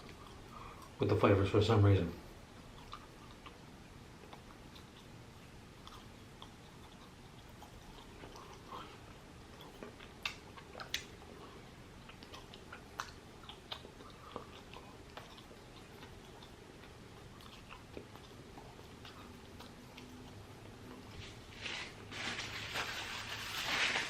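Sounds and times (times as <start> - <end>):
person chewing food: 0.0 - 1.0, 2.3 - 22.1
wet mouth clicks: 9.6 - 11.2, 12.1 - 21.0.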